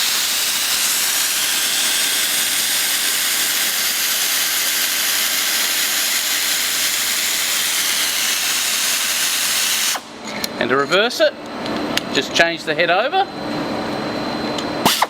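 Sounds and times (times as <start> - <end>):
air ratchet hissing: 0.0 - 10.1.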